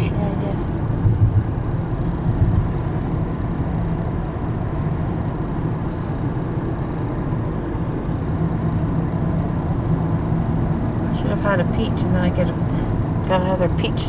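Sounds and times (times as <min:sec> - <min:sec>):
road noise inside moving car: 0:00.0 - 0:14.0
car bumps: 0:00.7 - 0:02.9.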